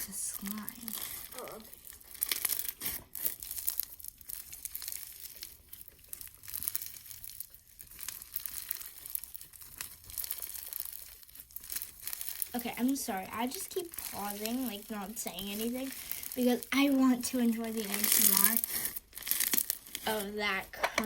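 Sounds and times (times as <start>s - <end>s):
crunchy slime crackling: 0.0s - 21.0s.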